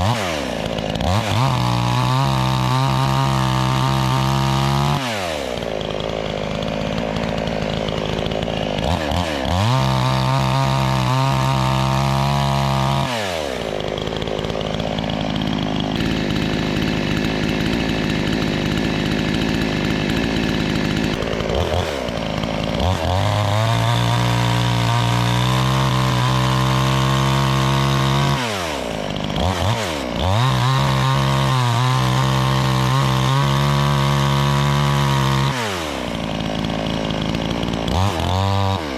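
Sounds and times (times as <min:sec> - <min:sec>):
chainsaw engine revving: 0:00.0 - 0:38.9.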